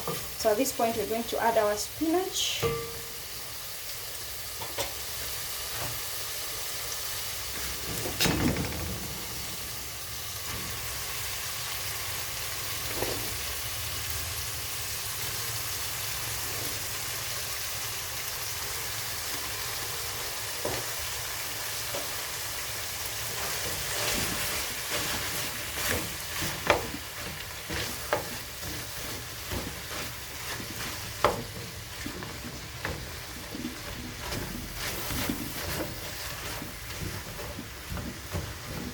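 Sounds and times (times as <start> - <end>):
spoon knocking and scraping pan: 0.0 - 1.3, 2.2 - 3.4, 4.6 - 5.1, 23.2 - 38.9
meat sizzling in a pan: 0.0 - 38.9.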